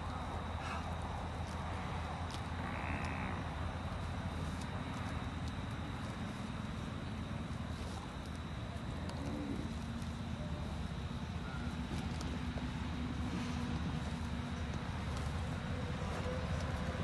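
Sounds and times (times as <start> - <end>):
low outdoor rumble: 0.0 - 17.0
low animal call: 8.9 - 10.7.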